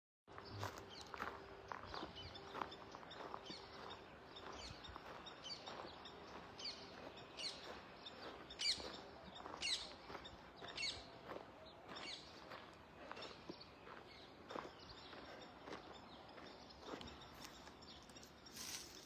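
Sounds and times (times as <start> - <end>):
birds chirping: 0.3 - 19.0.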